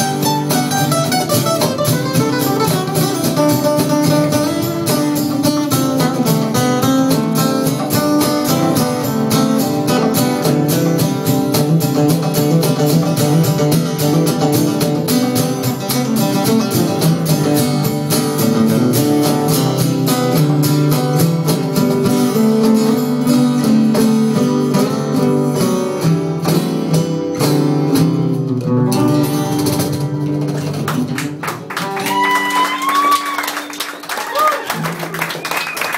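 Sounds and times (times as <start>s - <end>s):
acoustic guitar strumming: 0.0s - 34.1s
rising whoop: 32.0s - 35.0s.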